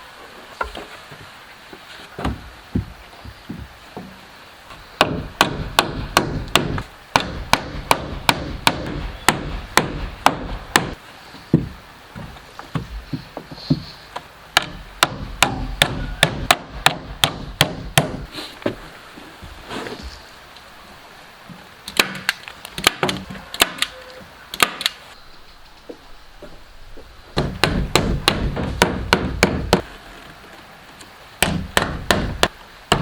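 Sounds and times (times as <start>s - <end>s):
hand tool striking wood: 5.0s - 11.0s, 14.6s - 18.3s, 21.9s - 23.9s, 24.6s - 25.0s, 27.4s - 29.9s, 31.4s - 33.0s.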